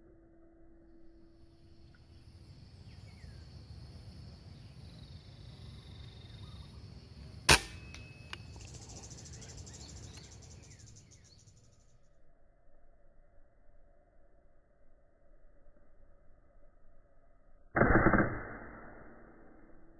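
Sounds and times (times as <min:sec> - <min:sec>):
faint bird chirps: 0:01.5 - 0:07.2, 0:07.8 - 0:13.2
insects buzzing: 0:01.5 - 0:11.9
air rifle shot: 0:07.5 - 0:08.1, 0:17.8 - 0:19.4.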